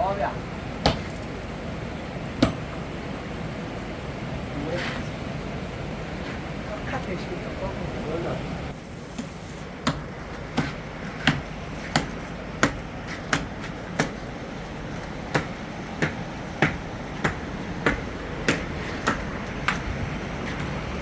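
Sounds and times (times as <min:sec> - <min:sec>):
sharp striking blows: 0:00.8 - 0:01.3, 0:02.4 - 0:02.8.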